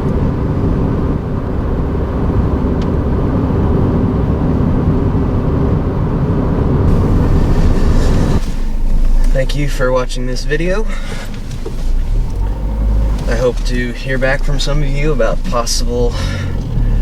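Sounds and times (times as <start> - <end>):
car engine running at high revs: 0.0 - 17.0
engine rattling and knocking: 6.9 - 17.0.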